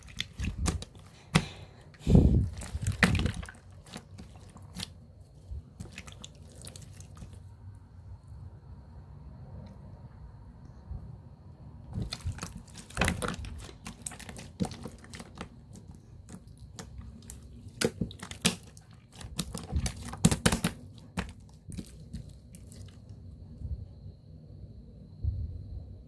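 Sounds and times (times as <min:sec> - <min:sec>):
slime squelching and popping: 0:00.0 - 0:07.4, 0:11.9 - 0:23.1.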